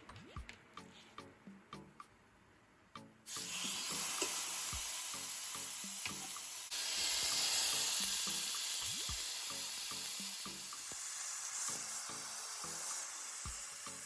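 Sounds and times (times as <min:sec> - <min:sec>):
background music with plucked notes: 0:00.0 - 0:02.2, 0:02.9 - 0:14.0
steak sizzling on a grill: 0:03.3 - 0:14.0.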